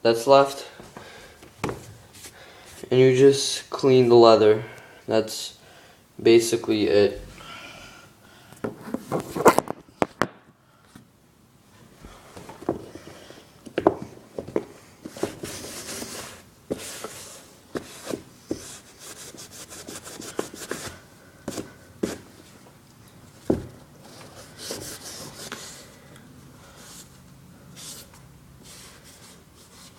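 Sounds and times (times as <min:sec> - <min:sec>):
shoe handling clicks and knocks: 0:12.4 - 0:15.6, 0:20.2 - 0:22.4, 0:23.4 - 0:25.0.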